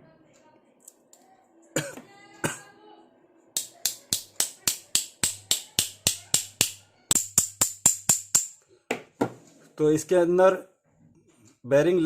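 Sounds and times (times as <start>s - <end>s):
hammer tapping on metal: 3.6s - 8.6s.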